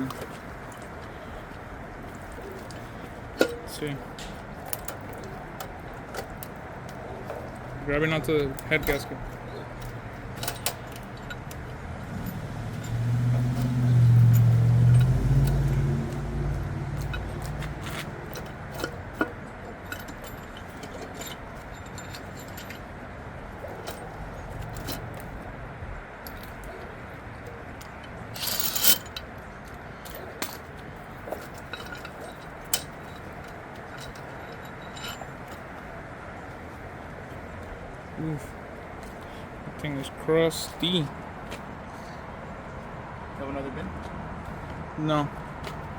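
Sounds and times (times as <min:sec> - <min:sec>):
metal tools clinking and scraping: 0:00.0 - 0:25.5, 0:26.2 - 0:37.5
metal parts clattering: 0:02.4 - 0:07.5, 0:08.1 - 0:23.0, 0:23.6 - 0:25.4, 0:27.5 - 0:29.3, 0:30.0 - 0:35.9
low hum: 0:09.2 - 0:29.2.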